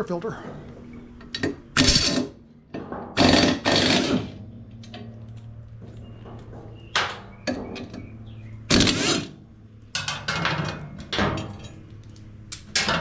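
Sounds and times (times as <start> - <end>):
metal parts clanking: 1.2 - 5.2, 8.7 - 11.9, 12.5 - 13.0.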